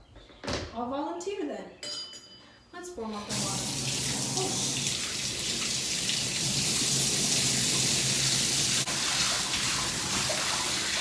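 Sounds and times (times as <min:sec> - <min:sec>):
water running into a tub: 0:03.2 - 0:11.0.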